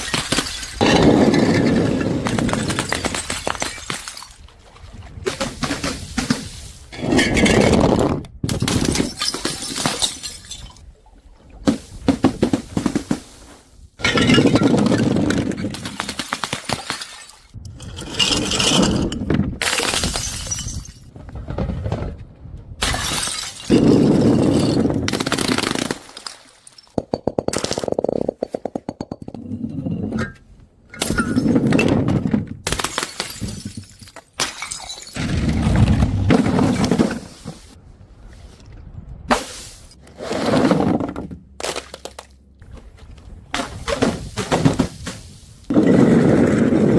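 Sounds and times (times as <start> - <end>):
glass bottles shattering on stairs: 0.0 - 4.4, 8.5 - 10.8, 14.0 - 17.5, 18.2 - 21.1, 22.8 - 27.7, 31.0 - 31.9, 32.7 - 35.7.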